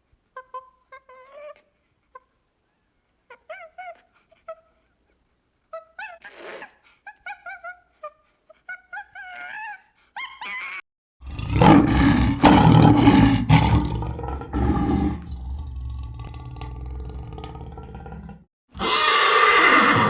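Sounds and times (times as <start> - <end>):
loud rough animal roar: 11.2 - 20.0.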